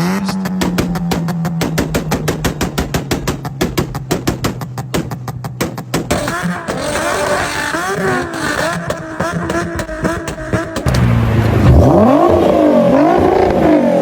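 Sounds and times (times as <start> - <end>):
car engine revving: 0.0 - 14.0
deeper car engine revving: 4.0 - 14.0.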